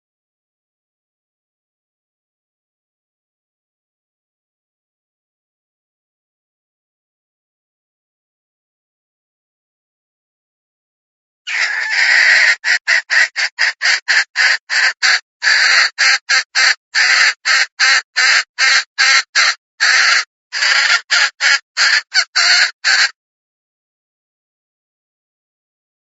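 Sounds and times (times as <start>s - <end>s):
hen clucking harshly: 11.5s - 23.2s.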